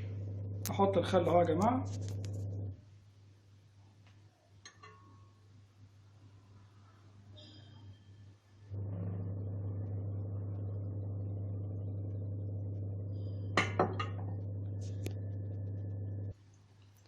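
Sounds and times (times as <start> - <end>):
washing machine humming: 0.0 - 2.8, 8.7 - 16.3.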